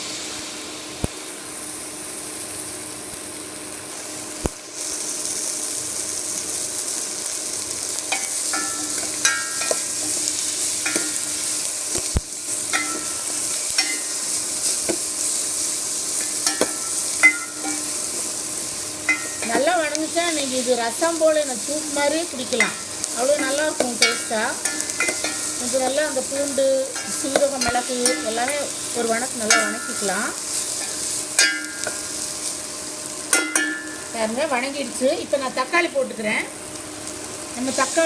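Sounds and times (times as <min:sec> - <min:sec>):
food sizzling in oil: 0:00.0 - 0:38.0
spatula scraping pan: 0:22.4 - 0:32.4.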